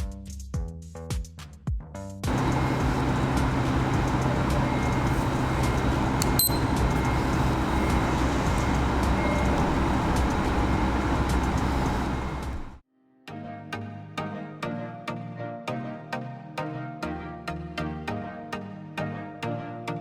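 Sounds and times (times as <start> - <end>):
machine running with low hum: 2.3 - 12.8.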